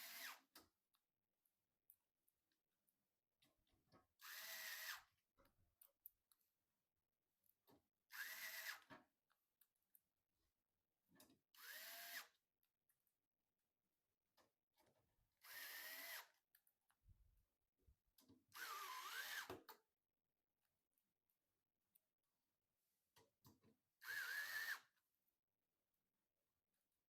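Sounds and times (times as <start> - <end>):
electric screwdriver motor whine: 4.2 - 5.1, 8.1 - 8.8, 11.6 - 12.3, 15.4 - 16.3, 18.5 - 19.6, 24.0 - 24.9.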